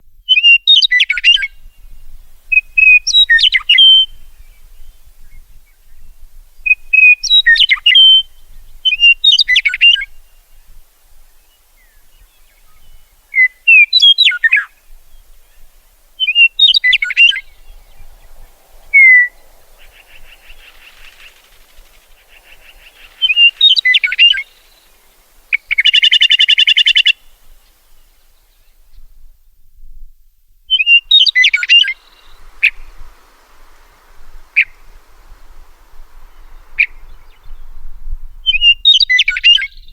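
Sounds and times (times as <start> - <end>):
bird singing whistled notes: 0.2 - 29.6, 30.7 - 39.9
bird rattling chatter call: 17.5 - 27.1.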